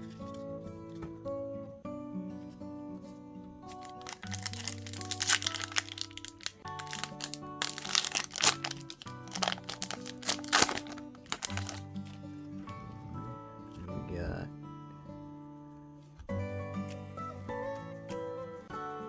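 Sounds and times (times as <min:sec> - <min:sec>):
acoustic guitar music: 0:00.0 - 0:19.0
plastic wrapper crinkling and tearing: 0:03.7 - 0:12.3.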